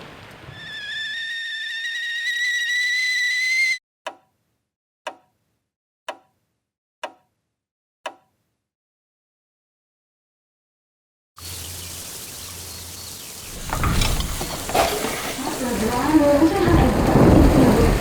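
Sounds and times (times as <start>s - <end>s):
high whistling tone: 0.5s - 3.8s.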